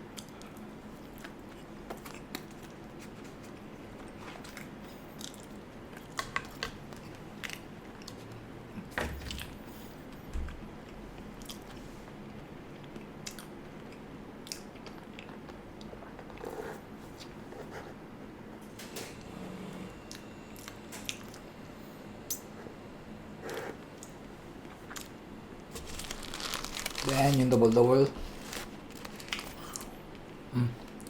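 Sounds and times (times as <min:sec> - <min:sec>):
chewing and biting: 0:00.1 - 0:06.2, 0:12.7 - 0:16.6.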